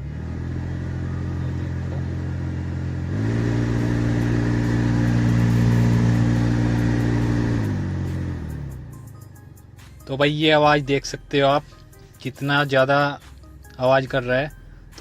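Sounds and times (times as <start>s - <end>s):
car ac blower fan humming: 0.7s - 8.0s.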